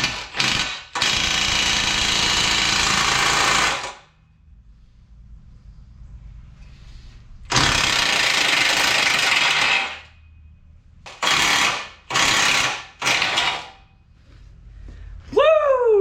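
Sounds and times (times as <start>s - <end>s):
power tool loosening bolts: 11.1s - 13.8s.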